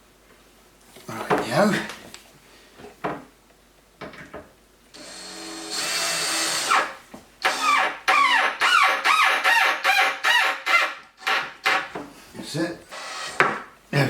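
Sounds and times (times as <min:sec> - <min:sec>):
power drill running: 0:05.0 - 0:11.9, 0:12.9 - 0:13.5.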